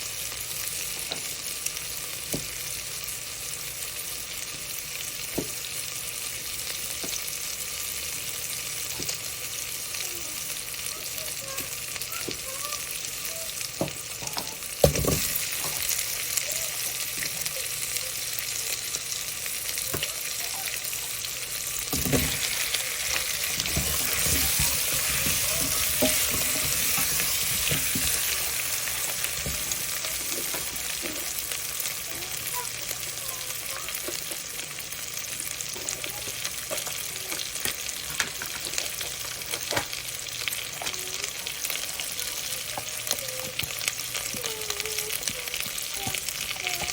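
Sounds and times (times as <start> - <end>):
food sizzling in a pan: 0.0 - 46.9.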